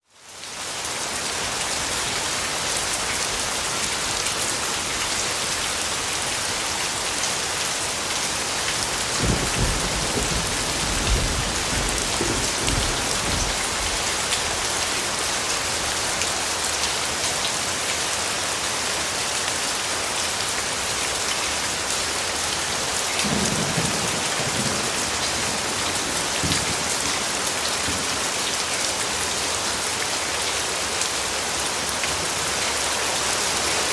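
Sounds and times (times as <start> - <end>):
rain pattering: 0.2 - 33.9
thunder rumbling: 9.0 - 14.6.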